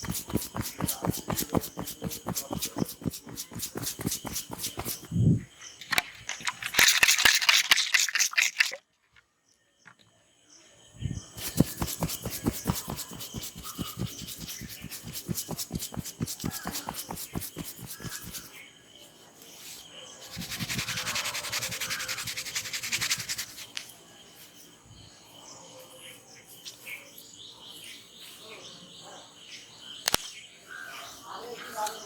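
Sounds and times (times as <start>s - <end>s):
hissy scrubbing through hair: 0.0s - 5.2s, 11.4s - 18.6s, 20.2s - 23.8s
hands rubbing hair and skin: 0.0s - 5.3s, 11.4s - 18.6s, 20.2s - 23.8s.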